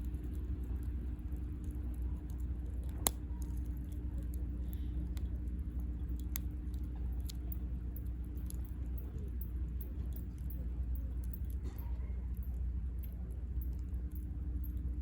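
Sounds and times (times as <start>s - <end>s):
burning wood popping: 0.0s - 7.6s
campfire crackling: 0.0s - 9.9s.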